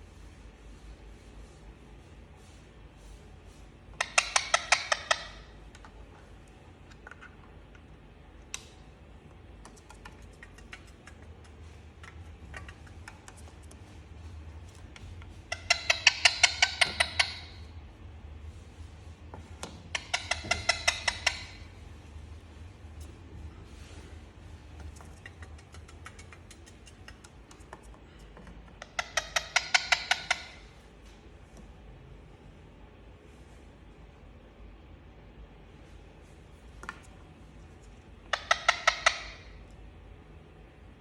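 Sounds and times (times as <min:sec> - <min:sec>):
parakeet rapid sharp calls: 0:28.8 - 0:30.7, 0:38.3 - 0:39.5.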